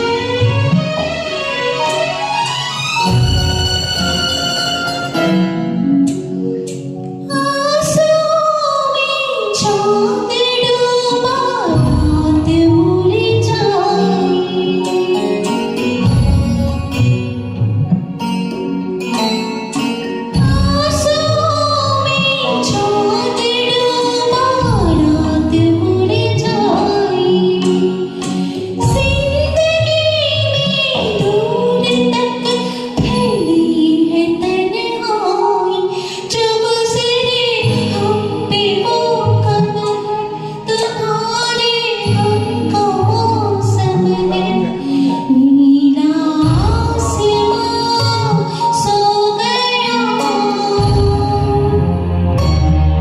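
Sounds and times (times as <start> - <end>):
instrumental backing music: 0.0 - 53.0
woman singing: 7.2 - 17.0, 20.3 - 52.4.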